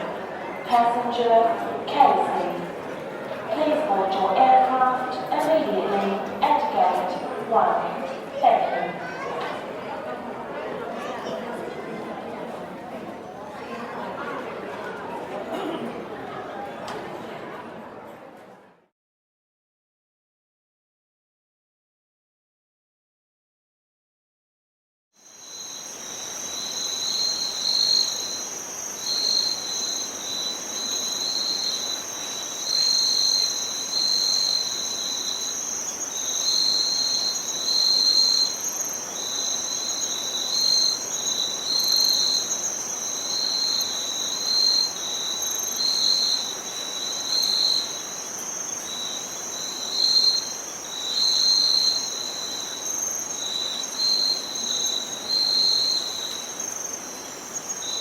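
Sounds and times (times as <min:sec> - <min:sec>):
faint outdoor hiss: 0:00.0 - 0:16.1, 0:25.2 - 0:58.0
insect high-pitched trill: 0:25.2 - 0:58.0
insect lower pulsing trill: 0:25.2 - 0:58.0.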